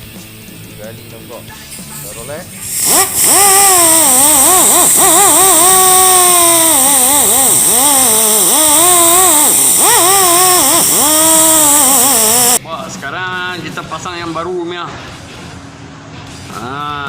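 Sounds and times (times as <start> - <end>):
steady hiss: 2.6 - 12.6
high-pitched engine revving: 2.7 - 12.6.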